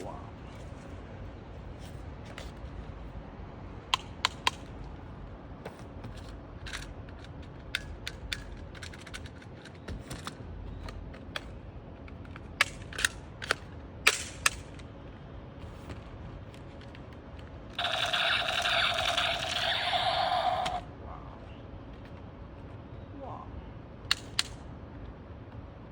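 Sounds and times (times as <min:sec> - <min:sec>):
toy blaster shots: 0:17.8 - 0:20.8.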